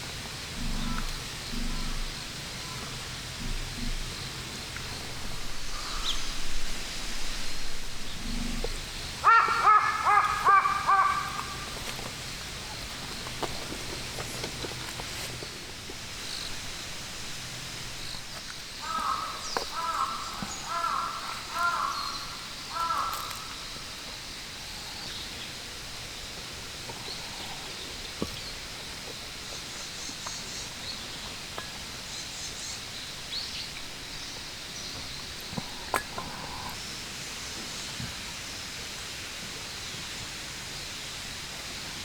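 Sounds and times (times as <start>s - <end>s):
small birds chirping: 0.0s - 38.6s
outdoor ambience: 0.0s - 42.0s
crow cawing: 5.7s - 6.3s, 9.2s - 12.1s, 18.8s - 23.8s.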